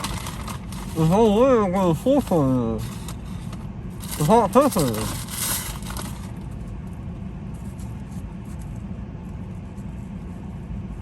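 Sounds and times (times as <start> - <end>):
idling car rumble: 0.0 - 11.0.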